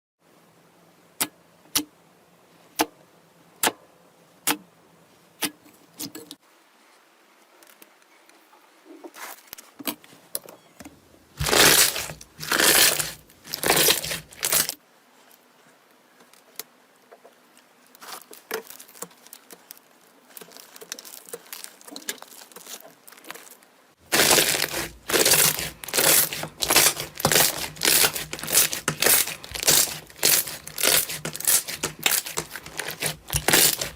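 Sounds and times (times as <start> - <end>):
slime popping and squelching: 11.4 - 14.8, 24.1 - 33.9.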